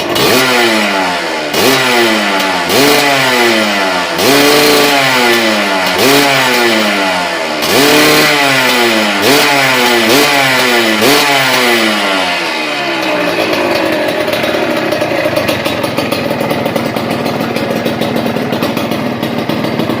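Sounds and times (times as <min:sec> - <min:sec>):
two-stroke engine revving and idling: 0:00.0 - 0:20.0.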